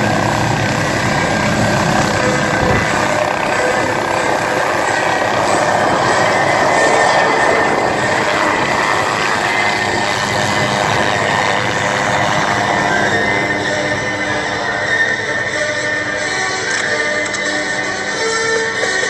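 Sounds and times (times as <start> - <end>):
steady tones: 0.0 - 10.4
helicopter running: 0.0 - 19.0.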